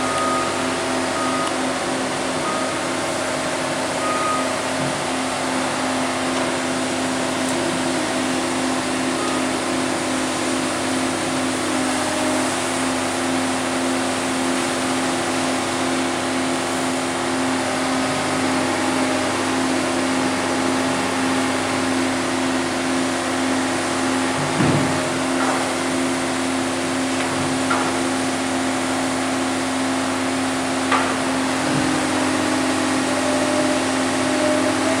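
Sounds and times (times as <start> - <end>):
excavator diesel engine: 0.0 - 35.0.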